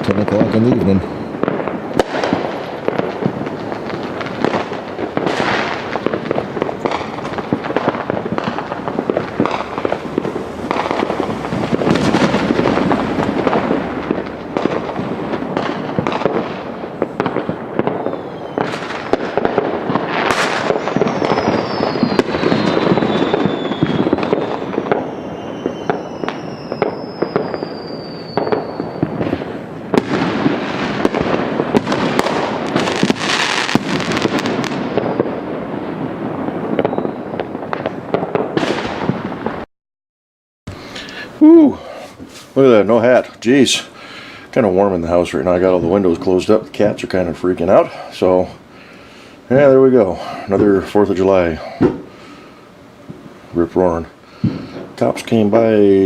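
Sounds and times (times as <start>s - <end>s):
firecrackers crackling and popping: 0.0s - 39.7s, 40.7s - 56.0s
firework bangs: 0.0s - 39.7s, 40.7s - 56.0s
falling firework whistles: 0.9s - 2.5s, 17.9s - 35.5s, 36.7s - 38.0s.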